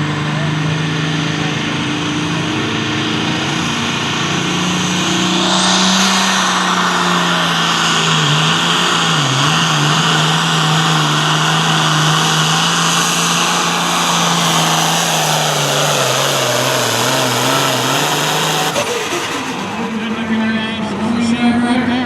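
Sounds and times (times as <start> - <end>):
tractor diesel engine under load: 7.0 - 22.0.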